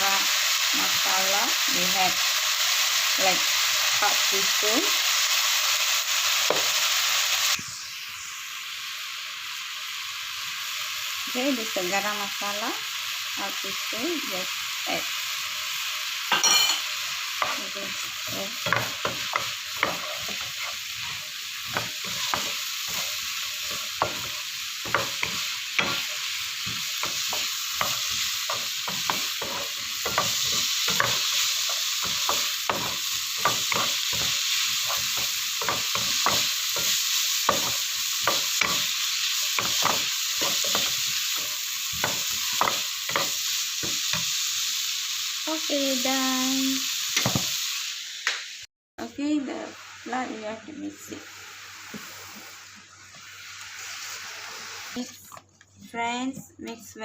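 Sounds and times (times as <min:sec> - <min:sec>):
vegetables sizzling in a pan: 0:00.0 - 0:57.0
spatula scraping a pan: 0:16.3 - 0:44.3.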